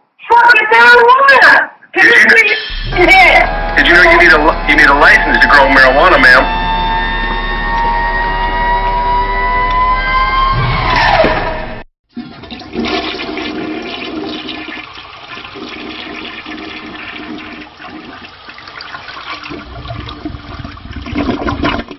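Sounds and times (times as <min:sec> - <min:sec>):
siren winding down: 0:02.4 - 0:11.9
toilet flushing: 0:02.6 - 0:09.5, 0:12.1 - 0:21.9.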